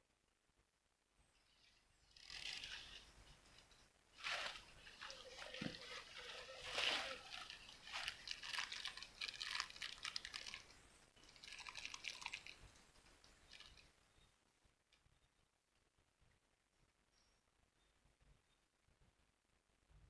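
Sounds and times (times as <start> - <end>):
water splashing and dripping: 4.2 - 10.7.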